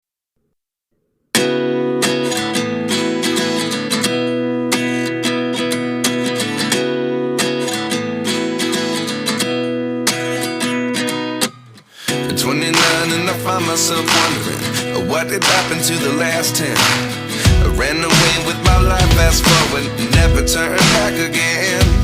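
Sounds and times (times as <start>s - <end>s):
acoustic guitar strumming chords: 1.3s - 22.0s.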